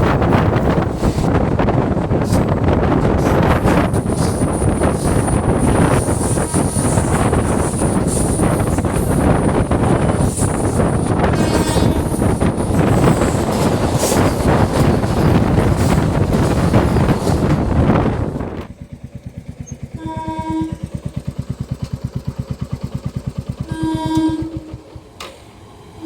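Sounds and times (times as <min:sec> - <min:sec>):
train rushing past: 0:00.0 - 0:18.8, 0:23.0 - 0:26.0
fast steady throbbing: 0:00.4 - 0:18.6
train horn blasts: 0:10.8 - 0:12.4, 0:19.9 - 0:21.0, 0:23.6 - 0:25.0.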